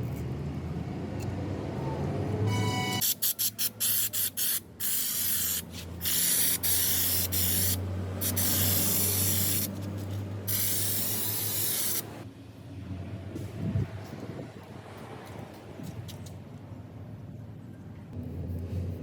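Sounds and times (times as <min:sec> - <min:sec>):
spray paint hissing: 0:03.0 - 0:12.3.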